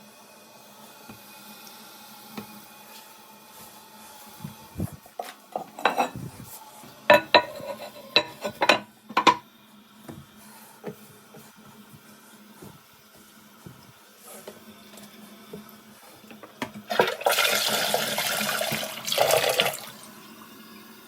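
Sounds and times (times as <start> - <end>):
tools and toilet parts clinking: 7.2 - 9.4.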